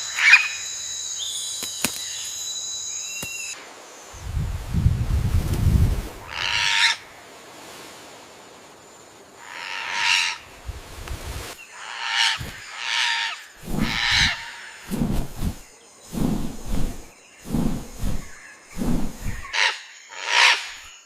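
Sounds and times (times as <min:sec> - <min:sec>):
low thumps: 0:16.2 - 0:19.5.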